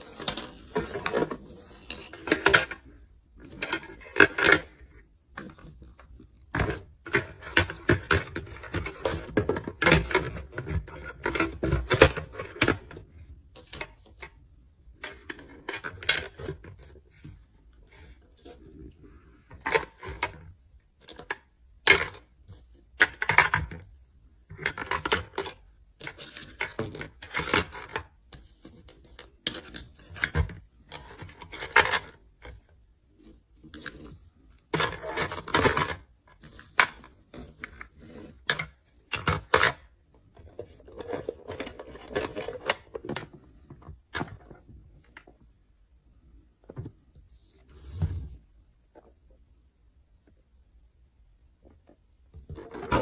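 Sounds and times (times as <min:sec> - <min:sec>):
plastic toys clicking and clattering: 0:00.0 - 0:13.0, 0:13.6 - 0:17.1, 0:19.5 - 0:23.9, 0:24.5 - 0:32.7, 0:33.6 - 0:45.4, 0:51.8 - 0:53.0
plastic rustling and scraping: 0:00.0 - 0:45.5, 0:51.7 - 0:53.0.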